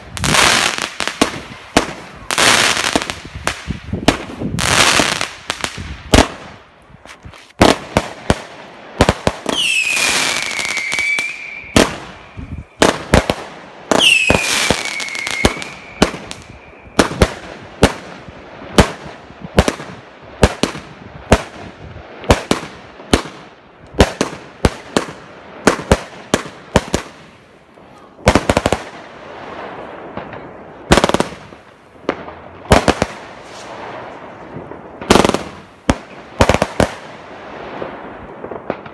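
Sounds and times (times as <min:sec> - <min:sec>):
fireworks and firecrackers banging: 0:00.0 - 0:38.9
whistling fireworks: 0:07.6 - 0:23.4, 0:27.9 - 0:38.9.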